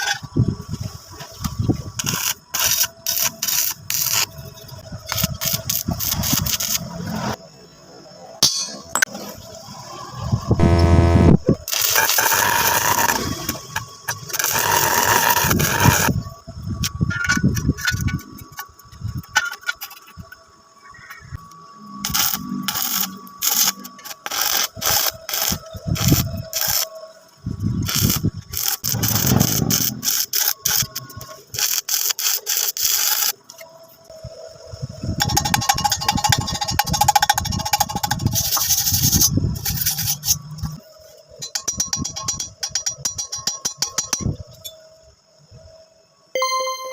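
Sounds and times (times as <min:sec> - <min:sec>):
welding arc crackling: 0:02.0 - 0:04.4, 0:05.1 - 0:07.1, 0:10.6 - 0:16.2, 0:22.0 - 0:26.9, 0:27.7 - 0:33.4
sharp strikes on metal: 0:08.4 - 0:09.1.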